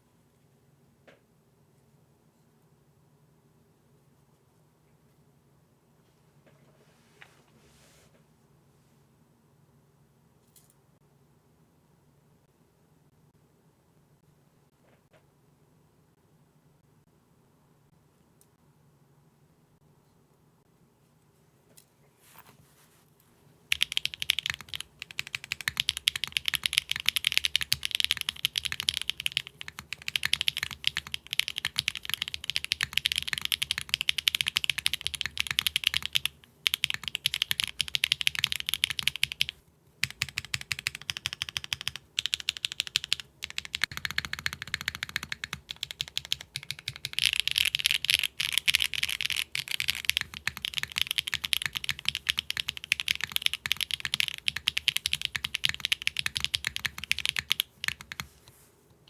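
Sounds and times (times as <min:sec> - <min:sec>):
mechanical keyboard typing: 0:23.7 - 0:58.5.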